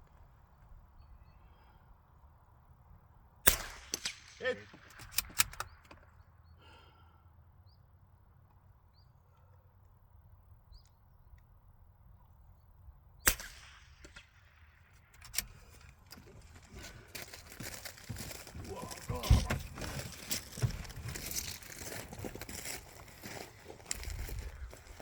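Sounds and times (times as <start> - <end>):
rifle shot: 3.4 - 5.8, 13.2 - 15.5
sharp clicks: 3.5 - 6.2.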